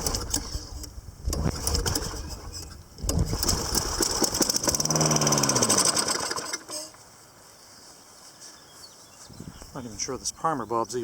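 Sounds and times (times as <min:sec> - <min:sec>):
lawn mower engine sputtering: 0:00.0 - 0:07.0.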